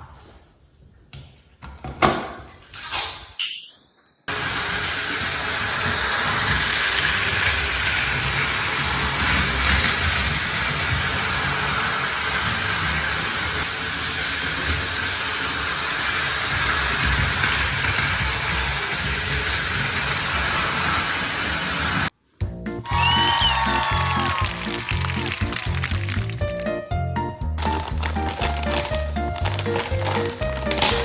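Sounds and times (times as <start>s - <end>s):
toy train whirring and rattling: 4.3s - 22.1s, 24.2s - 26.7s, 27.6s - 31.0s.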